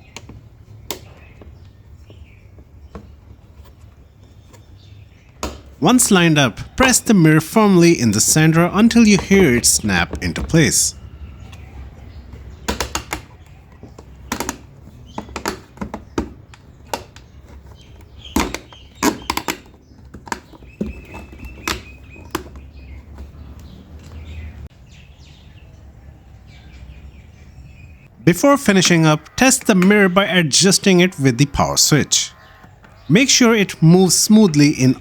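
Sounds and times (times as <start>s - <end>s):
birds chirping: 0.0s - 35.0s
plastic clips snapping: 12.6s - 17.3s.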